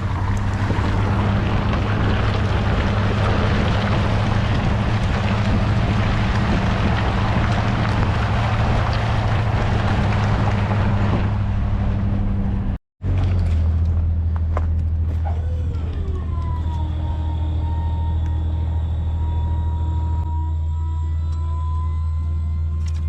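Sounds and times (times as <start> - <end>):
tyres in mud: 0.0 - 12.1, 13.0 - 20.2
truck engine running: 0.0 - 23.0
high whine sliding down: 15.4 - 23.0.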